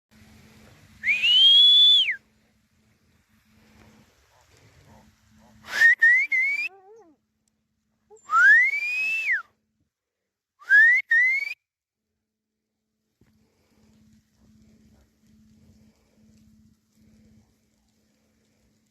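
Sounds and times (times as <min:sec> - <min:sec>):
person whistling: 0:01.0 - 0:02.2, 0:05.7 - 0:06.7, 0:08.2 - 0:09.5, 0:10.6 - 0:11.6.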